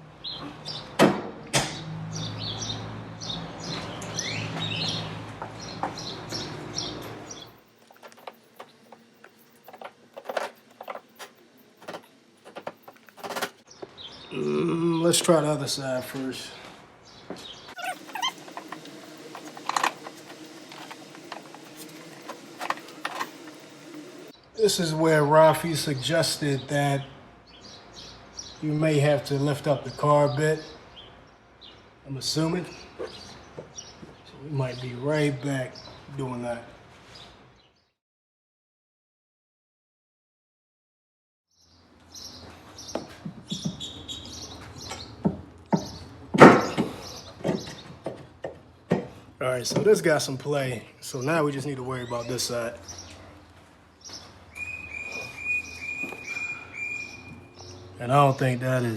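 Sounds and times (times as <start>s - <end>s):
birds chirping: 0.0s - 1.0s, 1.6s - 38.0s, 41.5s - 58.9s
metal parts clicking and knocking: 7.5s - 13.6s
sharp metal knocks and clanks: 44.9s - 49.9s.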